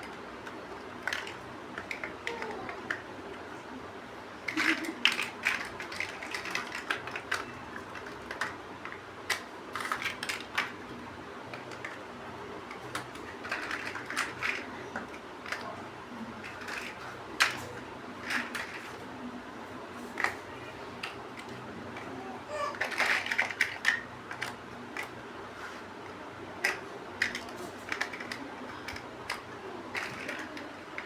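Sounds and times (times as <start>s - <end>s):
plastic bricks clicking and clattering: 0.0s - 3.0s, 4.5s - 10.9s, 12.7s - 15.8s, 16.4s - 19.0s, 21.0s - 25.2s, 26.6s - 31.0s.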